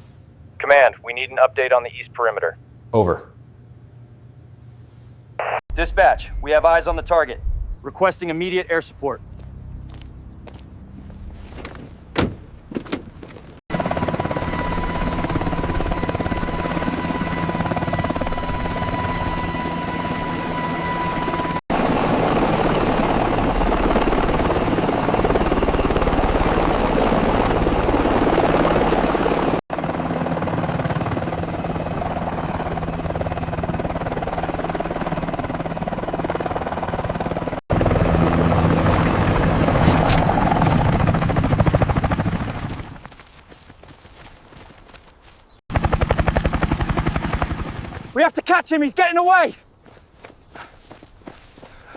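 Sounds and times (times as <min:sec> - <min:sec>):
helicopter rotor and engine din: 0:12.4 - 0:43.2, 0:45.7 - 0:49.4.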